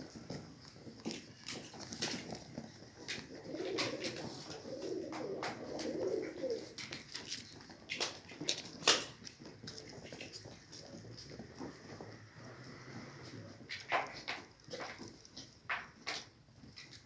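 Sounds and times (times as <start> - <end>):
pigeon cooing: 1.6 - 8.1.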